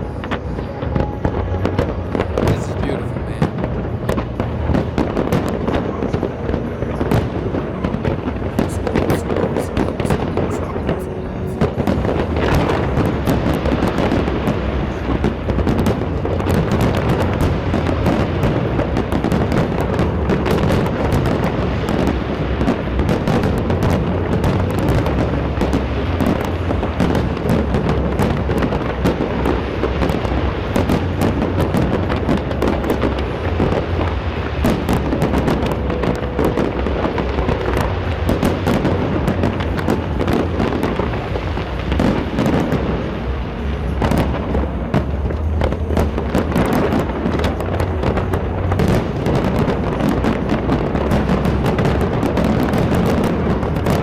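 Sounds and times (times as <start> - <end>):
music: 0.0 - 52.2
fireworks booming and crackling: 0.0 - 54.0.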